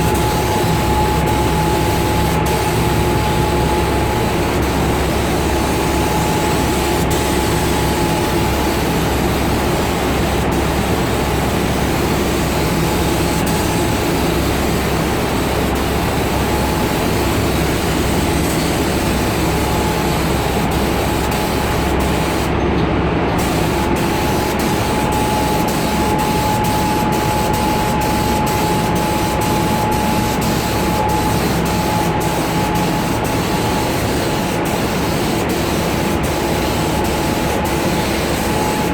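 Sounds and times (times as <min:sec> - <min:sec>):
thin whine: 0:00.0 - 0:09.6, 0:23.4 - 0:34.7.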